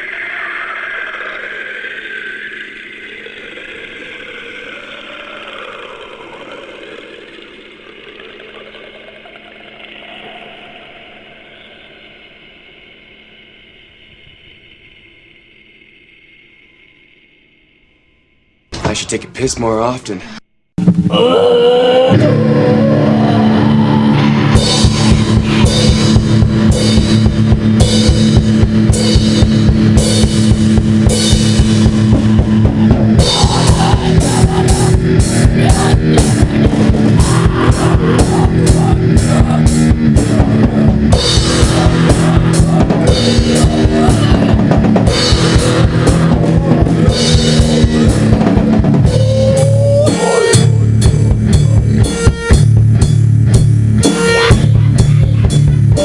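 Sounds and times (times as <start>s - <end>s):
metal guitar: 20.8s - 56.0s
guitar pitch slide: 21.1s - 56.0s
fast bass drum beat: 24.6s - 56.0s.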